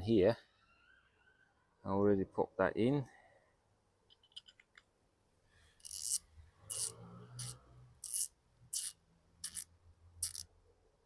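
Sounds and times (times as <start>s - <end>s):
ratchet rasping: 5.8s - 10.4s.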